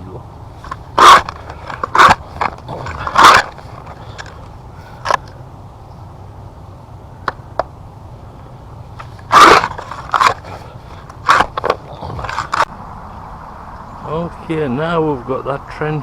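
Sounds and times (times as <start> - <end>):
shovel scraping gravel: 0.6 - 4.4, 9.0 - 12.7.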